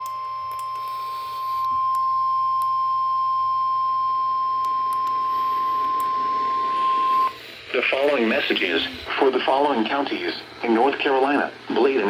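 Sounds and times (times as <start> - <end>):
faint radio hiss: 5.1 - 12.0.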